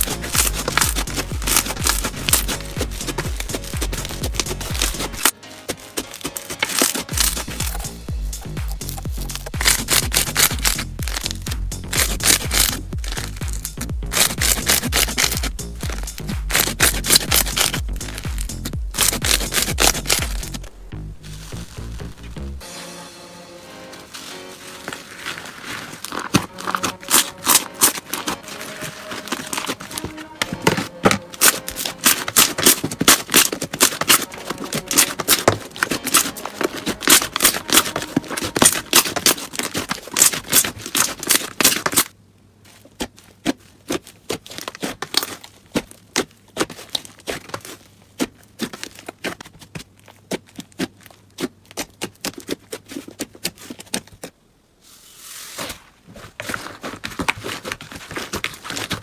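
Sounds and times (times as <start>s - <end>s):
slime squeezed with sticky pops: 0.0s - 20.7s, 26.0s - 42.1s.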